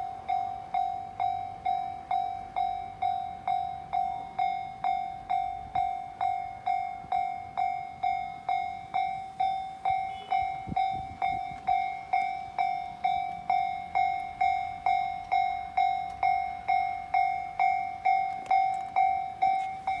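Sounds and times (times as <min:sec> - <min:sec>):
level-crossing warning bell: 0:00.0 - 0:20.0.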